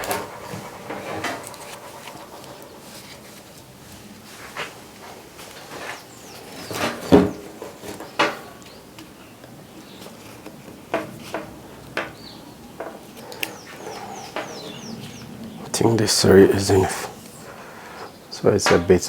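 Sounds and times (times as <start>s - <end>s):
heavy cable knocking and clunking: 0.0s - 3.2s.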